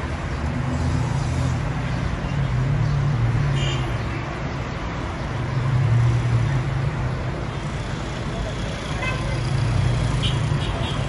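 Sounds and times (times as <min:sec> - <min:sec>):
traffic noise: 0:00.0 - 0:11.0
vehicle engines humming: 0:00.0 - 0:11.0.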